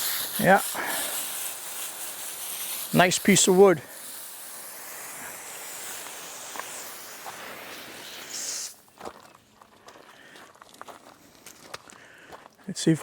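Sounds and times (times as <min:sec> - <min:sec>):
hose water spraying on wood: 0:00.0 - 0:08.9.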